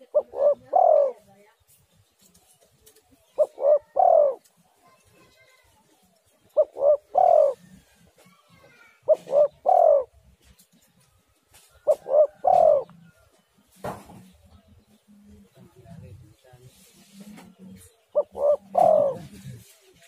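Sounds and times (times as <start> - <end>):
dove cooing: 0.0 - 1.3, 3.3 - 4.5, 6.5 - 10.4, 11.8 - 13.2, 17.2 - 19.7.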